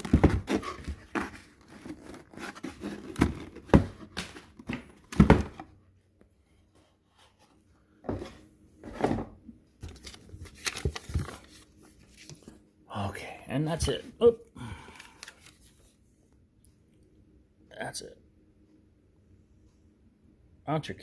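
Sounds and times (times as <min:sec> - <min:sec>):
cardboard and paper rustling: 0:00.0 - 0:05.6, 0:09.8 - 0:12.6, 0:14.9 - 0:16.0.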